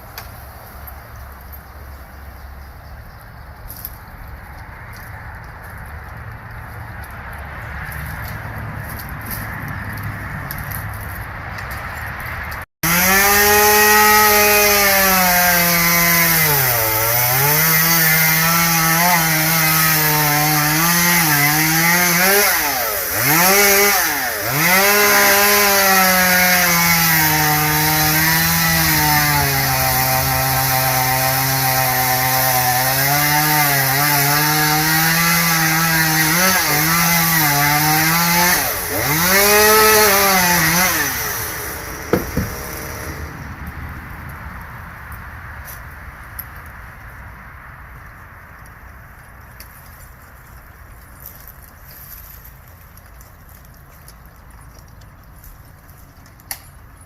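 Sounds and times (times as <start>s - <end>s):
chainsaw cutting wood: 12.5s - 43.3s.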